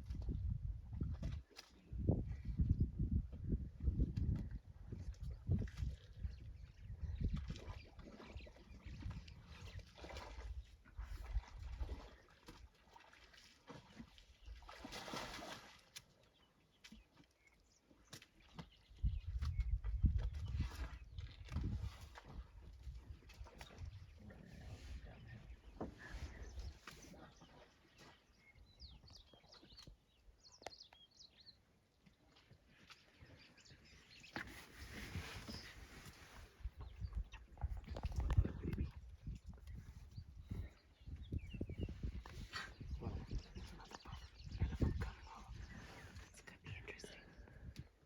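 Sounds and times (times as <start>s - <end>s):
water splashing: 11.2s - 16.0s
faint bird chirps: 40.1s - 47.8s.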